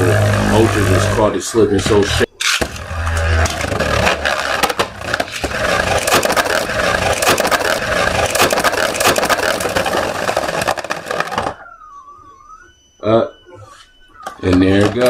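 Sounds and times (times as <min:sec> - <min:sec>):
spinning tops whirring and scraping: 0:00.0 - 0:11.8.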